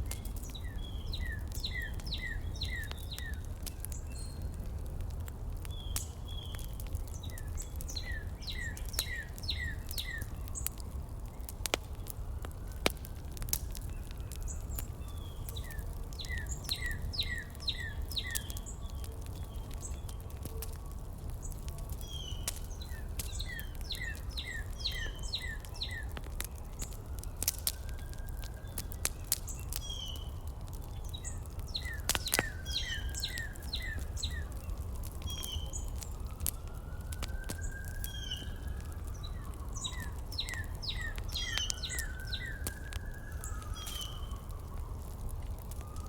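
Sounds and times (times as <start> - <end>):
small birds chirping: 0.1 - 4.6, 5.5 - 12.1, 12.9 - 20.7, 21.3 - 46.0.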